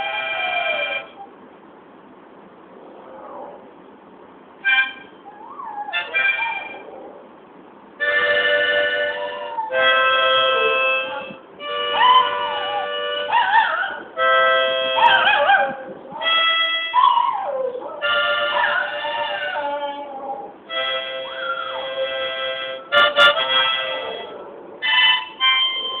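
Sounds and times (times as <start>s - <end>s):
dog howling: 0.0s - 1.2s, 5.2s - 7.3s, 8.3s - 22.3s
free-reed instrument chords: 8.0s - 13.4s, 14.1s - 15.1s, 20.7s - 26.0s.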